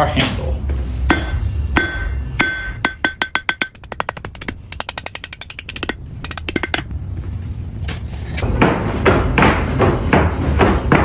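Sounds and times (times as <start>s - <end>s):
hammer striking iron on anvil: 1.1s - 6.9s.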